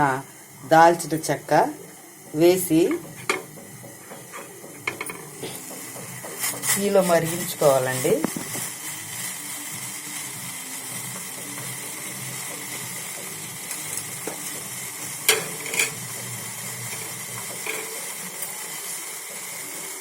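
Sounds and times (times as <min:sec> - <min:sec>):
water heating on stove hissing: 0:00.0 - 0:20.0
spices clinking into pan: 0:13.7 - 0:18.6.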